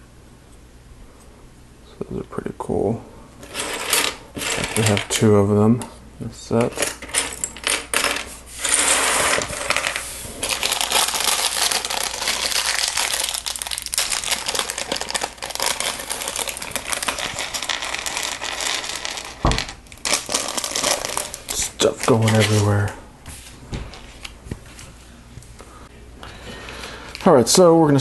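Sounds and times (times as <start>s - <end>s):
plastic pieces clattering: 3.4s - 5.2s, 6.6s - 22.9s
plastic bag rustling: 8.4s - 25.0s.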